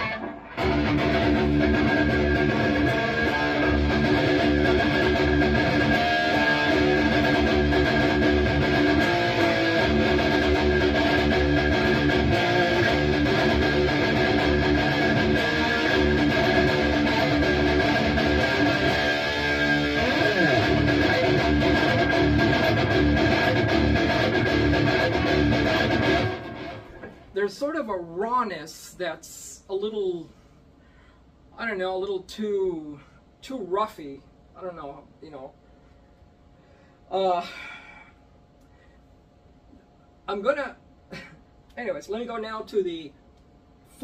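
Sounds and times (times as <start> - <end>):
guitar pitch slide: 0.0 - 27.2
distorted electric guitar riff: 0.0 - 27.3.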